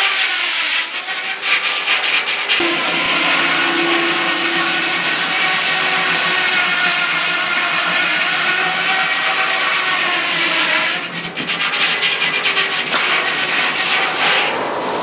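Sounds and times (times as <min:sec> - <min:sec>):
sawmill running: 0:02.6 - 0:14.5.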